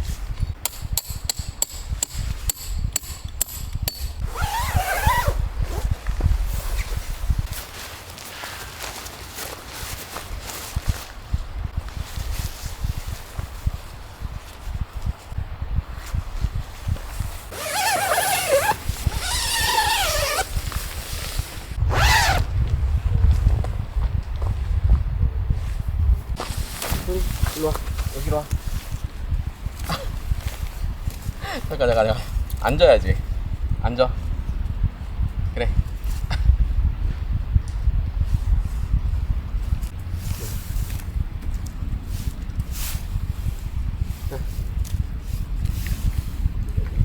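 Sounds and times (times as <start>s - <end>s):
wind buffeting microphone: 0.0s - 7.8s, 9.9s - 47.0s.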